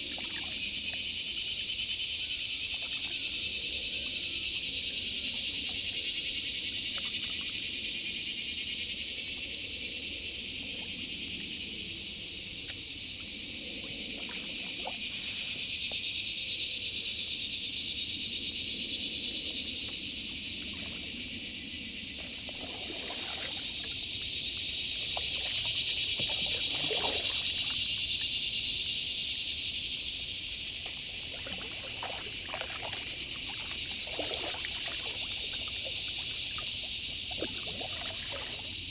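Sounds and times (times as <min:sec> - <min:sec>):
insects chirring: 0:00.0 - 0:38.9
water trickling and dripping: 0:30.8 - 0:38.7.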